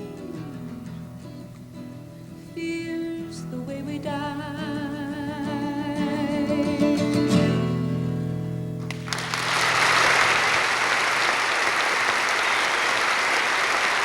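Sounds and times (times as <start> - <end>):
audience applause: 8.8 - 14.0.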